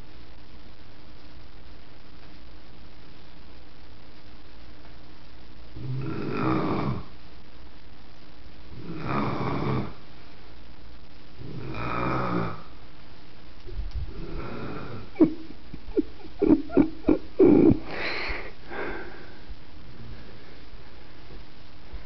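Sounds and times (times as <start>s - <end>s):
woman snoring: 5.8s - 7.1s, 8.7s - 10.0s, 11.4s - 12.8s, 14.1s - 15.4s, 16.8s - 19.3s.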